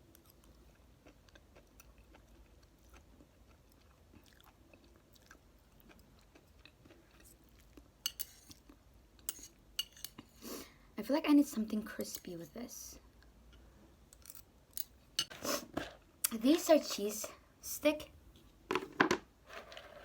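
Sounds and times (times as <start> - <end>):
chewing noodles: 0.0 - 8.8.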